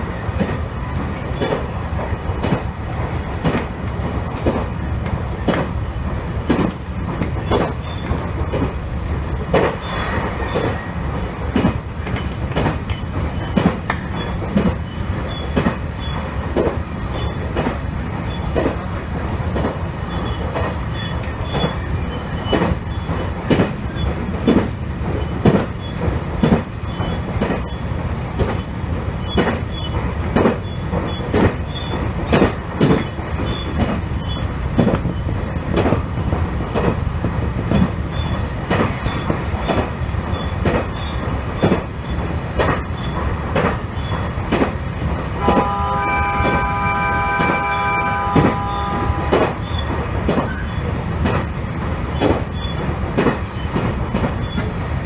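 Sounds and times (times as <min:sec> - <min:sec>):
train rumbling: 0:00.0 - 0:55.0
wheels clicking over rail joints: 0:00.4 - 0:46.8
train horn: 0:45.4 - 0:49.7.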